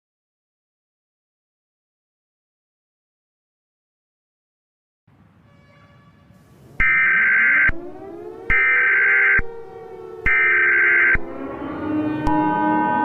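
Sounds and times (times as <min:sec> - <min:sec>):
screeching digital data tones: 0:10.3 - 0:13.0.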